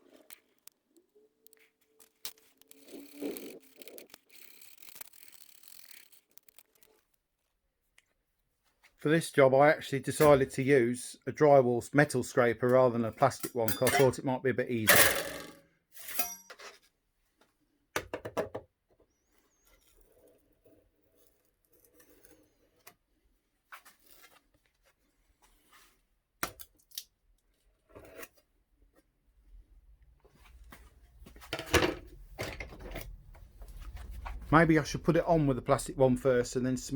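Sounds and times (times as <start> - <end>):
metal scraper scraping resin: 19.4 - 23.1.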